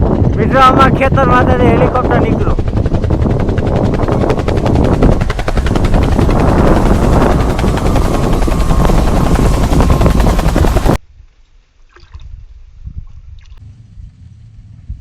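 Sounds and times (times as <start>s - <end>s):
helicopter rotor chopping: 0.0s - 11.0s.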